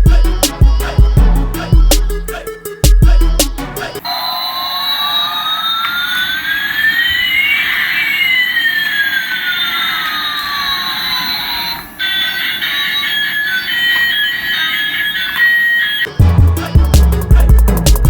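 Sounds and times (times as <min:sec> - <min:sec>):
toy jet engine sound effect: 0:04.0 - 0:16.2
beeping electronic tune: 0:12.0 - 0:17.4.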